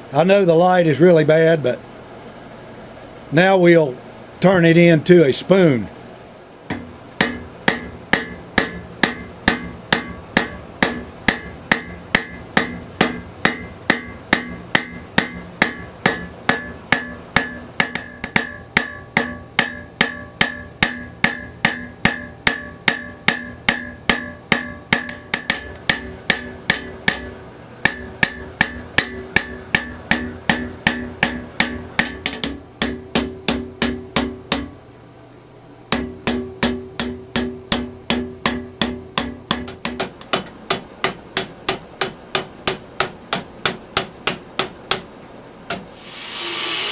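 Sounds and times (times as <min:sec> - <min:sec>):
hammer striking steel on anvil: 0:06.7 - 0:34.8, 0:35.9 - 0:45.0.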